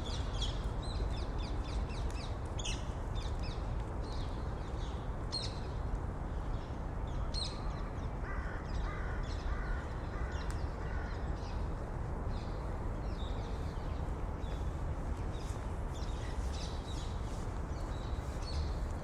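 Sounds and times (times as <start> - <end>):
crow cawing: 8.2 - 10.3.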